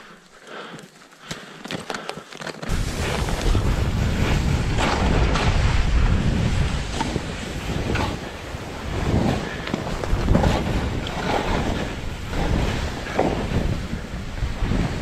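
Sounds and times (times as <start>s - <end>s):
footsteps in snow: 2.2s - 15.0s
wind buffeting microphone: 2.7s - 15.0s.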